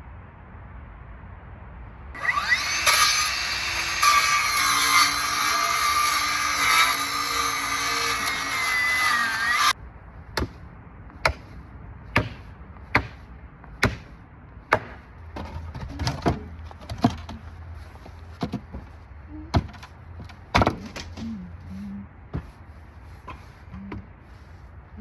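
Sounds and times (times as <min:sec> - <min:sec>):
power tool cutting: 0:02.2 - 0:09.8.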